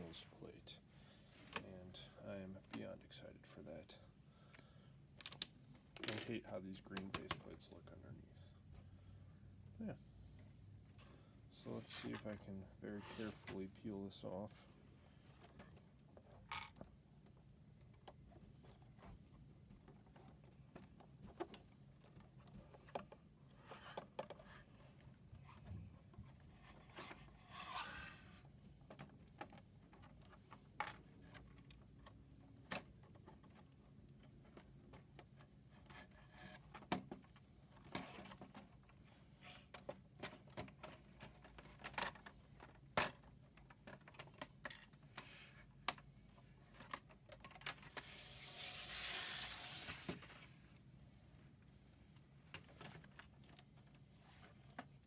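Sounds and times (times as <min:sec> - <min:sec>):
plastic scraping rustle: 0:47.7 - 0:50.6.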